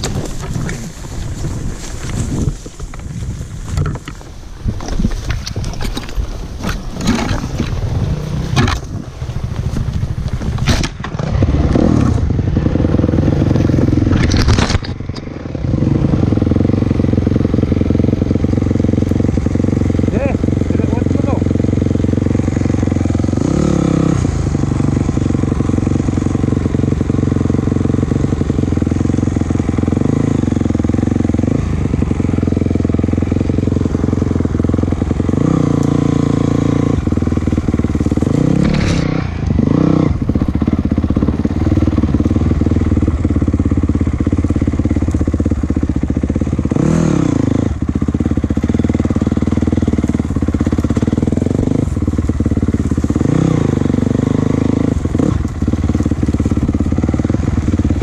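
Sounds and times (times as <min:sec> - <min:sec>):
vehicle engine revving under load: 0:15.4 - 0:58.0.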